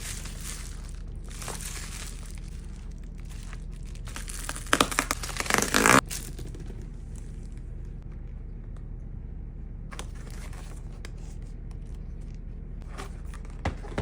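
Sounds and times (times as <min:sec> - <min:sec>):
packaging crinkling and tearing: 0:00.0 - 0:06.8
low steady hum: 0:00.0 - 0:14.0.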